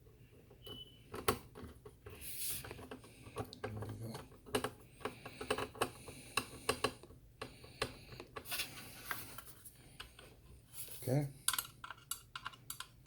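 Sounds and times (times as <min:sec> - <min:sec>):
small hardware clicking and tapping: 0:02.8 - 0:08.5.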